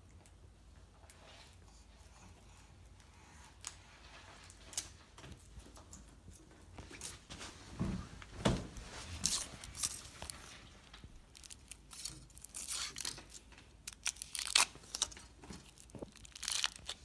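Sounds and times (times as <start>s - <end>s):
foil wrapper tearing and crinkling: 9.2s - 17.0s.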